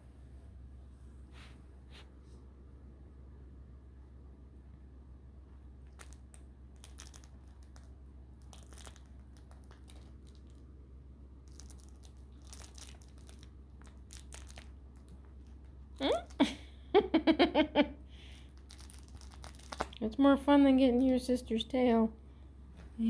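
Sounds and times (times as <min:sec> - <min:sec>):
kittens scrabbling and rustling: 0:05.9 - 0:10.7, 0:11.4 - 0:16.6, 0:18.3 - 0:20.0.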